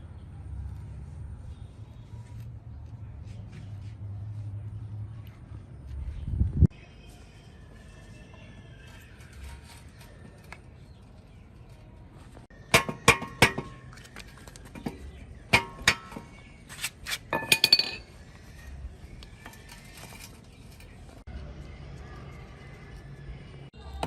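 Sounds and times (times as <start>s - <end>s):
metal pieces clinking: 17.3s - 18.1s.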